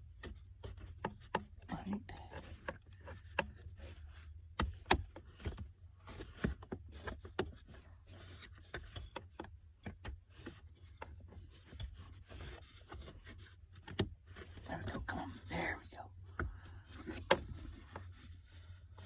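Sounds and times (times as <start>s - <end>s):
plastic rubbing and scraping: 0.0s - 19.0s.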